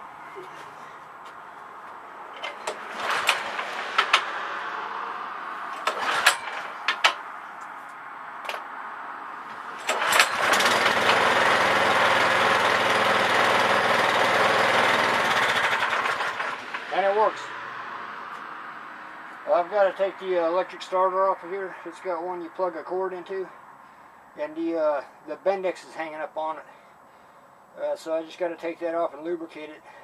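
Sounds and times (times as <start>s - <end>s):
clicks and knocks: 2.3s - 4.3s, 5.7s - 7.2s
small engine running: 2.7s - 4.4s, 9.9s - 16.9s.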